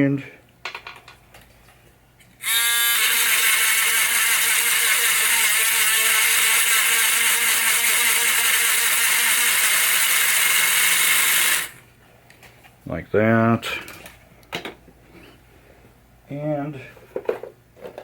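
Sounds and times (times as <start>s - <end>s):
high-speed electric tool whining: 2.4s - 11.8s.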